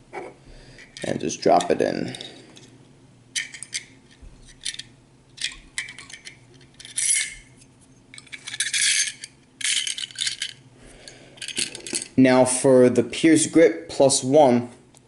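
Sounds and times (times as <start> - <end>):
magazine parts clicking and rattling: 3.4 - 10.6, 11.4 - 12.2.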